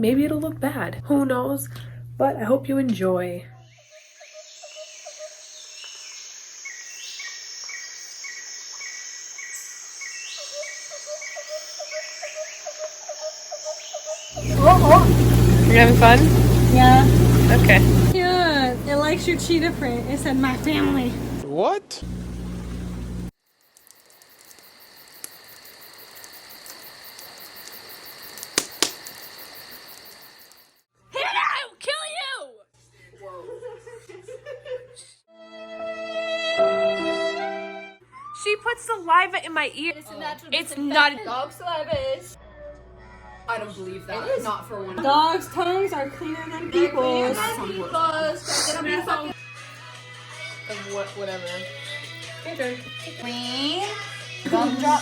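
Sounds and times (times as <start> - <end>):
insects droning: 3.5 - 21.4, 22.0 - 30.9, 45.0 - 55.0
sharp clicks: 28.4 - 29.3.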